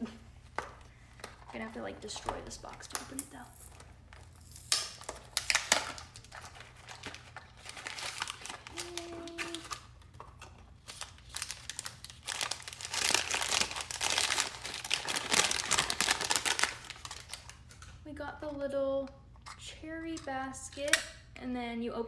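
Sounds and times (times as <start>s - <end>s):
packaging crinkling and ripping: 2.8s - 17.9s.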